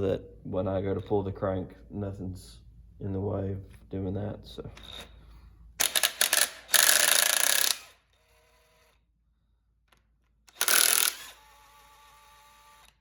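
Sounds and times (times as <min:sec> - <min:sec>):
impact wrench running: 0:05.8 - 0:08.9, 0:10.5 - 0:13.0.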